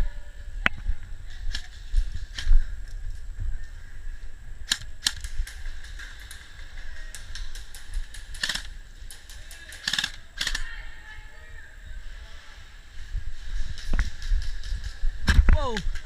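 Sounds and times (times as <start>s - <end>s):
airsoft guns firing: 4.7s - 10.7s.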